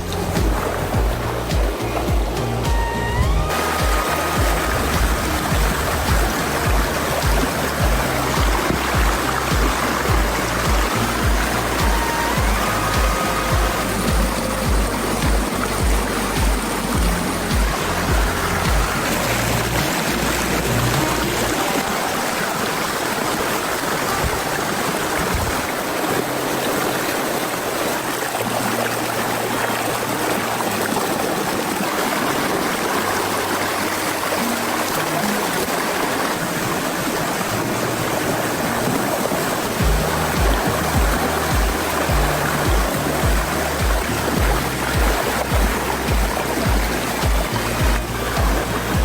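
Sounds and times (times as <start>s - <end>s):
background music with bass: 0.0s - 22.1s, 26.2s - 49.0s
flowing water: 0.0s - 49.0s.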